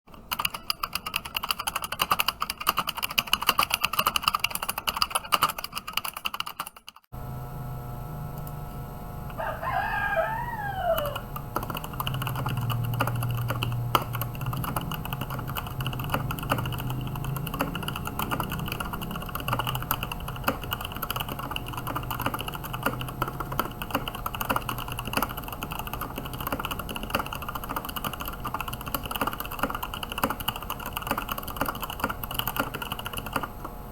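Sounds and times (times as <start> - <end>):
fast typing on mechanical keyboard: 0.1 - 7.1, 10.9 - 33.6
low steady hum: 7.2 - 33.9
rooster crowing: 9.3 - 11.4.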